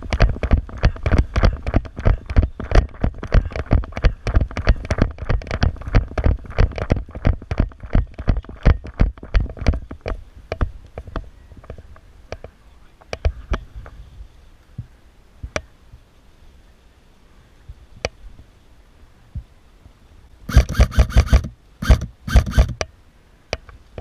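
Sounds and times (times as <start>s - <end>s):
airsoft rifle full-auto bursts: 20.5s - 22.8s.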